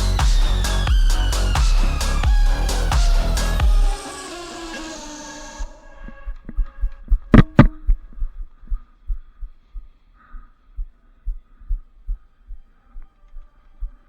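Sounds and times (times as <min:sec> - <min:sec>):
heartbeat thudding: 0:07.1 - 0:08.2.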